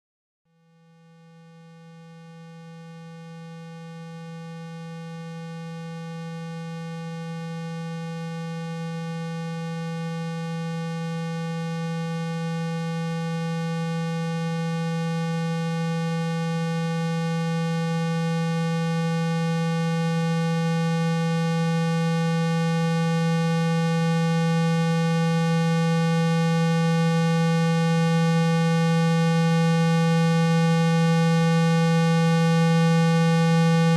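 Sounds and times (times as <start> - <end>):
steady sine tone: 0.5 - 33.9.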